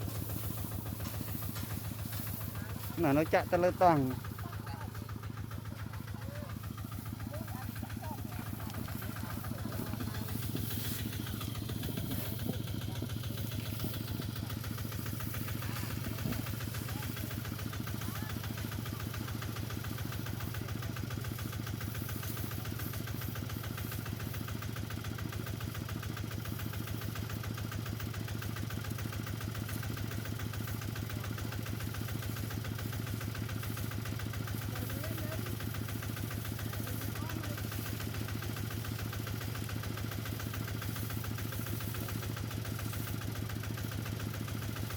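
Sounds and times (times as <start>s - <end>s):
small engine running: 0.0s - 44.9s.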